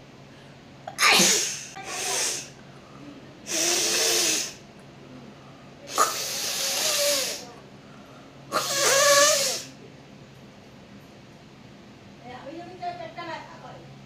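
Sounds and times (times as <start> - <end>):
woman blowing her nose: 1.0 - 2.6, 3.5 - 4.6, 5.9 - 7.5, 8.5 - 9.7.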